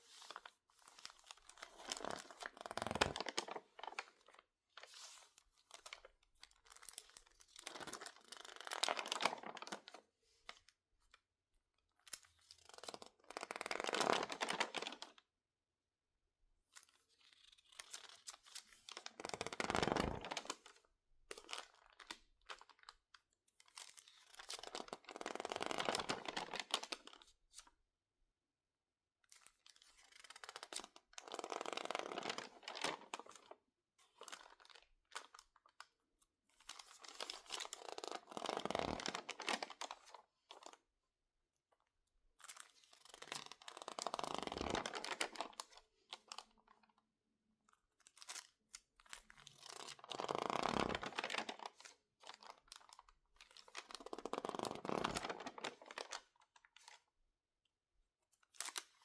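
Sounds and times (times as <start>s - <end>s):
magazine pages crinkling: 0.0s - 4.3s, 6.7s - 9.9s, 31.3s - 33.4s, 36.7s - 40.8s, 42.5s - 46.4s, 49.5s - 57.0s.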